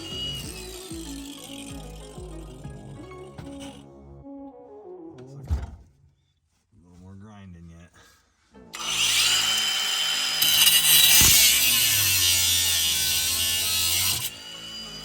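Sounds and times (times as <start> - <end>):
angle grinder cutting metal: 0.0 - 3.8, 8.8 - 15.0.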